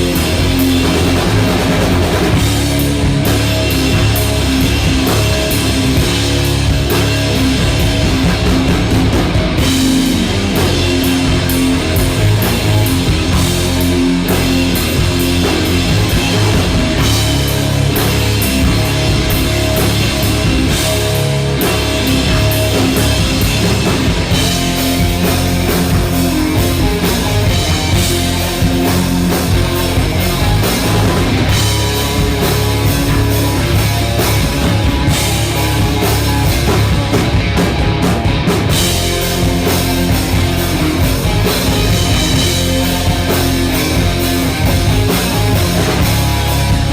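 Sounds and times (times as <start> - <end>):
rock music with electric guitar: 0.0 - 46.9.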